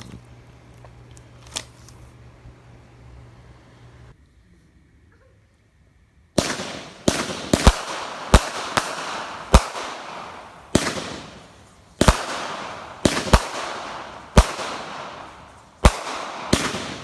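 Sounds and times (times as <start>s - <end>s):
firework bangs: 6.4s - 17.0s
hissing crackle: 6.4s - 17.0s.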